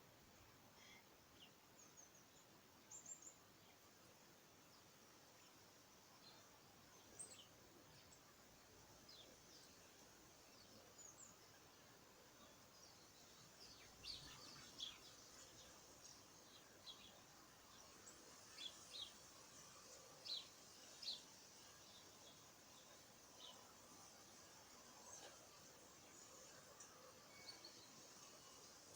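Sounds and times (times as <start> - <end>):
steady background hiss: 0.0 - 28.9
faint bird chirps: 0.7 - 3.8, 26.8 - 28.5.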